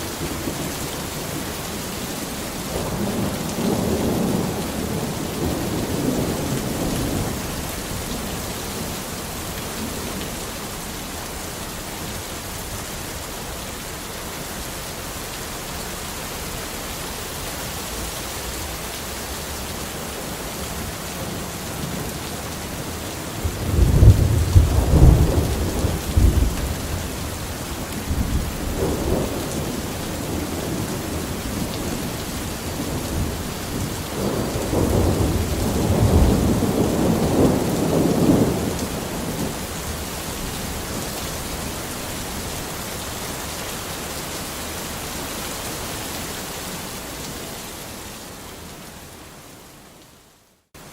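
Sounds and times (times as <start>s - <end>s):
rain hiss: 0.0s - 50.9s
rolling thunder rumble: 20.2s - 43.2s.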